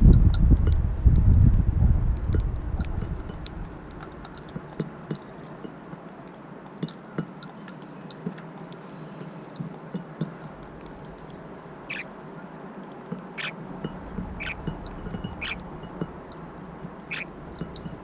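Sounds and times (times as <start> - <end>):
birds pecking ticks: 0.0 - 18.0
birds chirping: 2.0 - 18.0.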